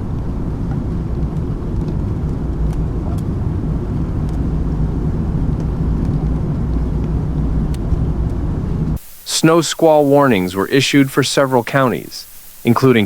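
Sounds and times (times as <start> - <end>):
vehicle rumble: 0.0 - 9.0.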